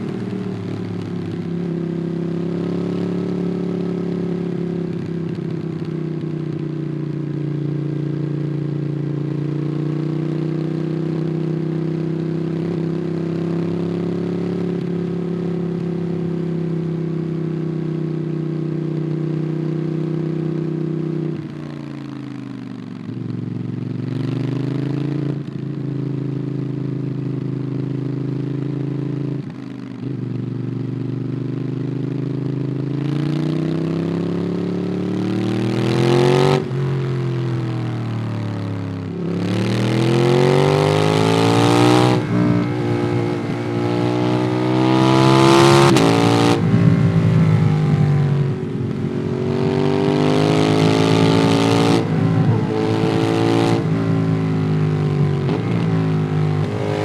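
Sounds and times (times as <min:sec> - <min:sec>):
motorcycle engine revving: 0:00.0 - 0:22.3, 0:30.0 - 0:57.0.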